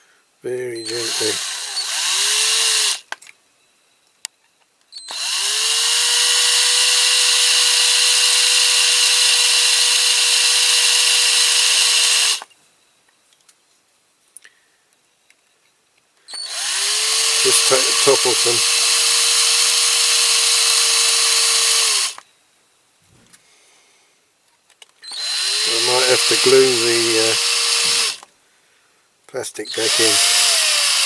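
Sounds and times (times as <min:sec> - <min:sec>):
small electric drill whining: 0:00.8 - 0:03.1, 0:05.0 - 0:12.5, 0:16.3 - 0:22.2, 0:25.0 - 0:28.3, 0:29.7 - 0:31.0.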